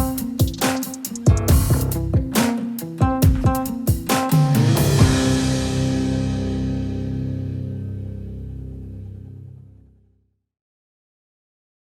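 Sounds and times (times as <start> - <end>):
rock guitar and drums music: 0.0 - 9.2.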